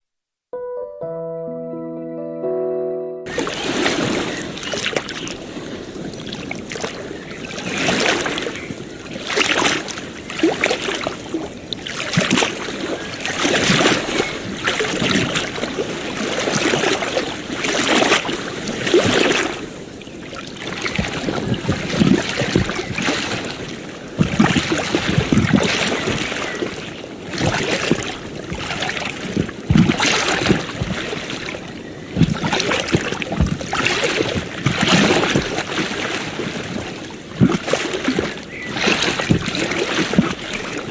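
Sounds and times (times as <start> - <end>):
ocean waves washing onto shore: 3.3 - 40.9.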